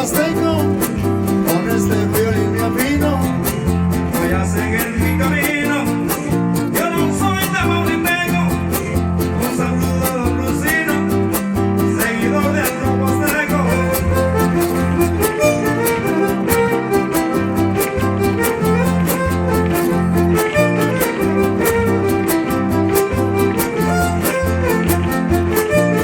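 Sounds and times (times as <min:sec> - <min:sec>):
guitars strumming: 0:00.0 - 0:26.0
violin melody: 0:12.8 - 0:26.0.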